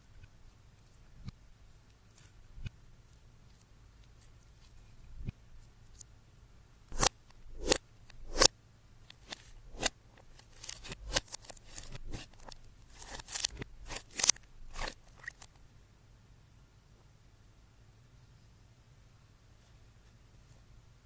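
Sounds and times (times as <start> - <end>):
slime crackling and snapping: 10.5 - 15.5.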